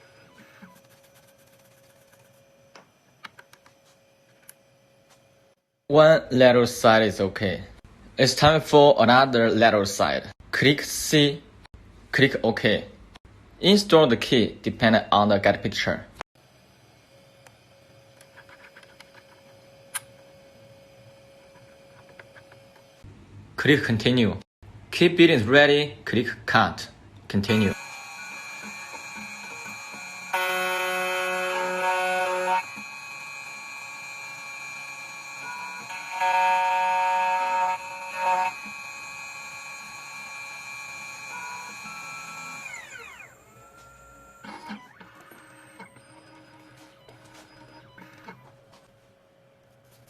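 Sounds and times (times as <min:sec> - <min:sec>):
key cutting machine whining: 0:27.5 - 0:48.4.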